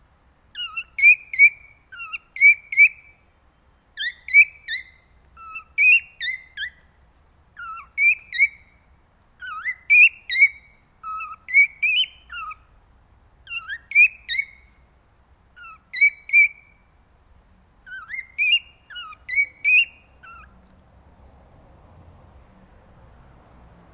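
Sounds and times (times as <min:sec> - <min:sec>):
cockatiel whistling song: 0:00.6 - 0:03.2, 0:04.0 - 0:06.8, 0:07.6 - 0:08.8, 0:09.4 - 0:12.7, 0:13.5 - 0:14.7, 0:15.6 - 0:16.9, 0:17.9 - 0:20.5.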